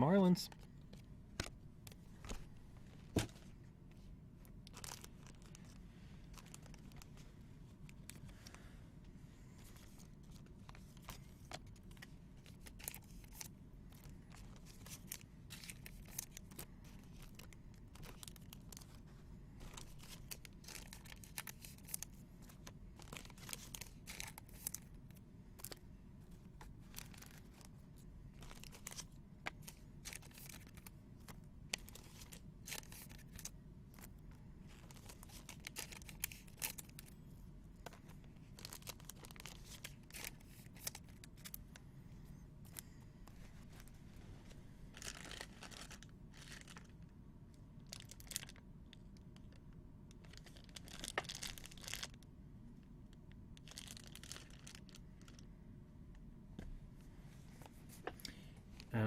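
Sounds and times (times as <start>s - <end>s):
wrappers crinkling and tearing: 4.6s - 7.2s, 9.6s - 25.8s, 26.6s - 27.7s, 28.3s - 37.1s, 37.8s - 41.7s, 44.9s - 47.0s, 47.8s - 49.6s, 50.2s - 52.2s, 53.6s - 55.4s
cards clicking and rustling: 9.6s - 19.0s, 19.6s - 24.9s, 26.6s - 27.7s, 28.4s - 37.1s, 37.8s - 41.6s.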